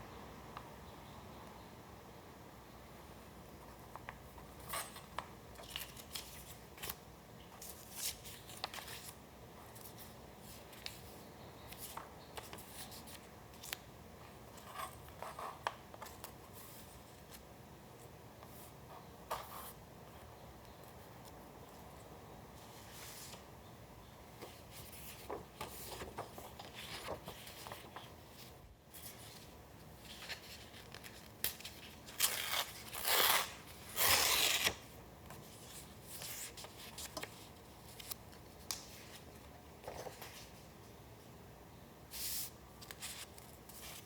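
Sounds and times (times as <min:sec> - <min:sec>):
paper rustling: 0:24.4 - 0:40.6
paper tearing: 0:32.2 - 0:34.8.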